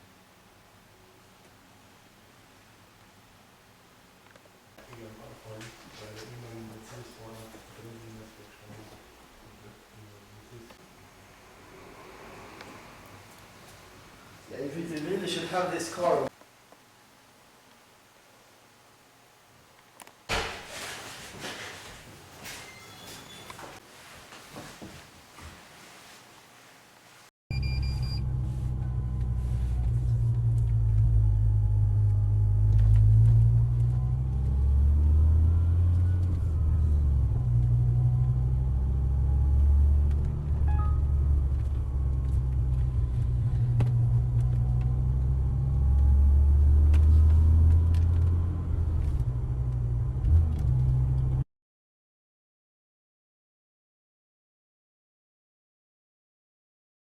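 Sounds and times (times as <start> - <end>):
car engine rumble driving: 27.5 - 51.4
faint supercharger whine: 27.5 - 51.4.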